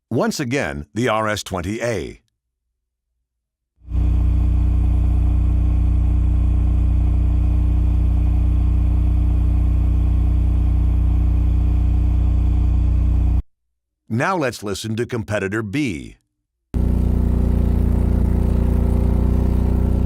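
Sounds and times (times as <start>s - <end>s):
generator engine humming: 3.9s - 13.4s, 16.8s - 20.0s.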